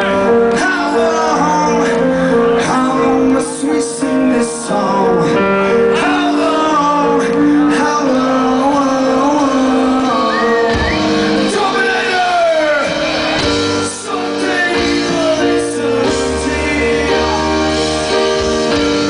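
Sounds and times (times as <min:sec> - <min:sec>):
held keyboard chords: 0:00.0 - 0:19.0.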